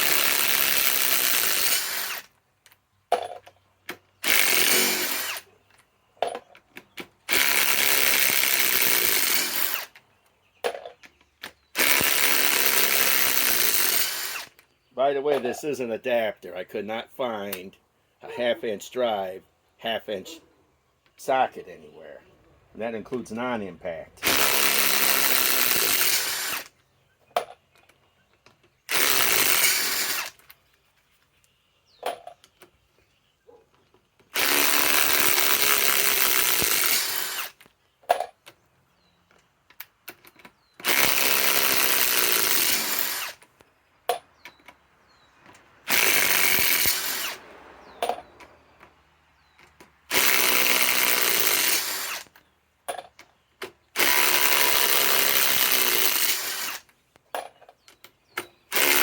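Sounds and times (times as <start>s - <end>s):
impact wrench hammering on screws: 45.9s - 47.3s.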